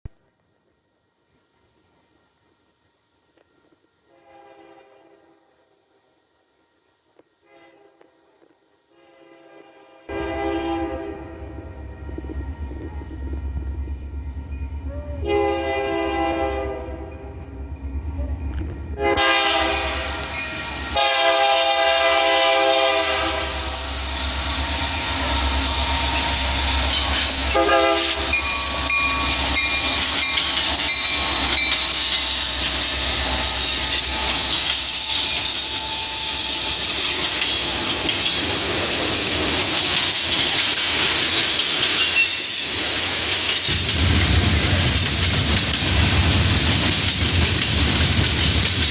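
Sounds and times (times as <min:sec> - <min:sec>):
locomotive air horn: 0:04.0 - 0:05.6, 0:07.4 - 0:08.2, 0:08.9 - 0:14.1, 0:14.8 - 0:17.4, 0:18.9 - 0:24.0, 0:25.1 - 0:29.7, 0:31.3 - 0:37.1
rail squeals: 0:09.0 - 0:45.7
train wheels clattering: 0:17.1 - 0:48.9.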